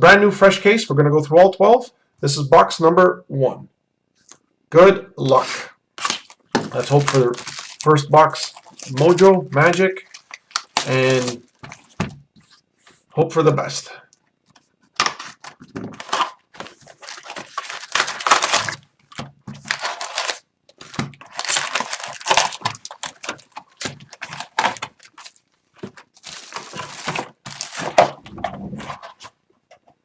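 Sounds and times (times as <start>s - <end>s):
plastic shrink wrap tearing and crinkling: 6.0s - 12.1s, 15.0s - 29.3s.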